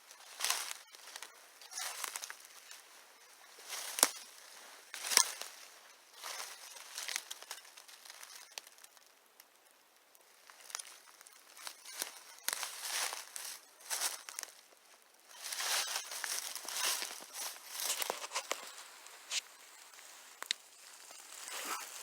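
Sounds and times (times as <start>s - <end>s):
dry leaves rustling and crunching: 0.2s - 3.0s, 3.6s - 8.5s, 11.6s - 14.6s, 15.3s - 22.0s.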